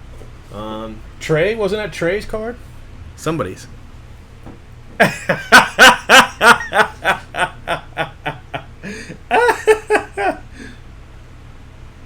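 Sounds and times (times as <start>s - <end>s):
person laughing: 5.0s - 10.8s.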